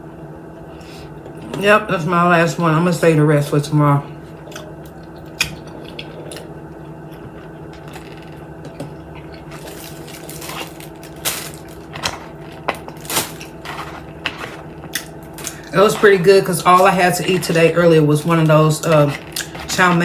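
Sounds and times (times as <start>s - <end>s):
steady low hum: 0.0s - 20.0s
food container and wrapping handled: 9.4s - 20.0s.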